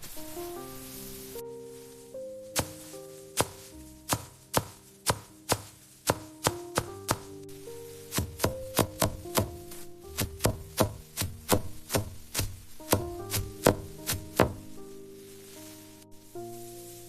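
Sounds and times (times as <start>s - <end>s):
knife chopping on wooden board: 3.4s - 7.3s, 8.1s - 9.6s, 10.2s - 14.6s.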